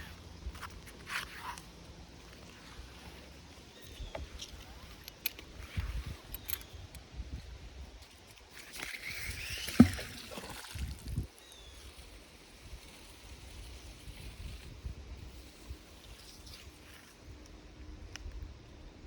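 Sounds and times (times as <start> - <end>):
water splashing and sloshing: 8.4 - 11.3.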